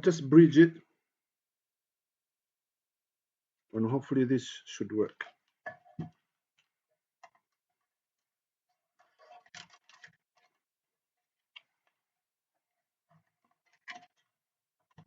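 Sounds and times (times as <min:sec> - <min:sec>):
small parts and tools rattling: 0:08.8 - 0:10.7, 0:12.6 - 0:15.0.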